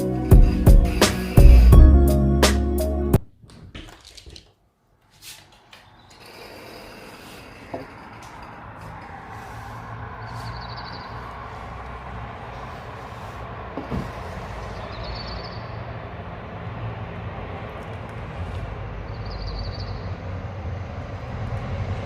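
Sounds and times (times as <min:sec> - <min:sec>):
vehicle rumbling past: 0:06.8 - 0:22.0
bird trilling: 0:14.8 - 0:15.8.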